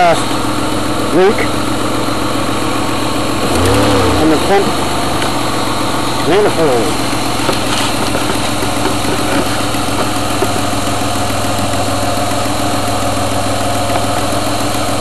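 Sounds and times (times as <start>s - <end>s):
truck engine idling: 0.0s - 15.0s.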